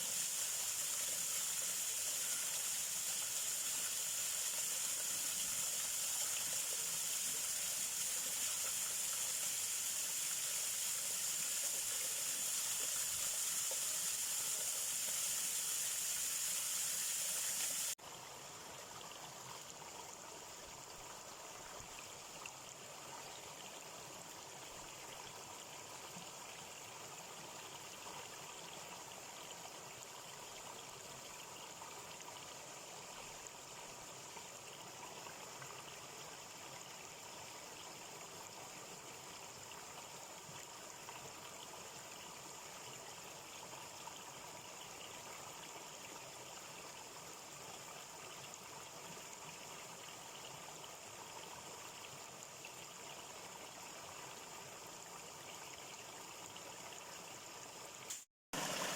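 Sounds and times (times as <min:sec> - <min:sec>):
stream trickling: 0:00.0 - 0:58.9.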